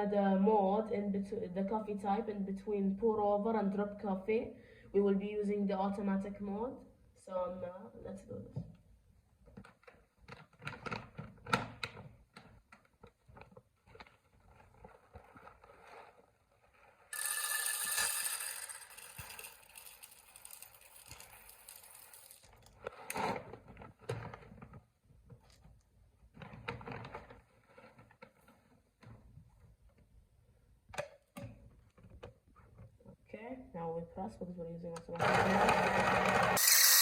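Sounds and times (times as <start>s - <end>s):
coffee grinder grinding beans: 17.1s - 23.0s, 35.2s - 37.0s.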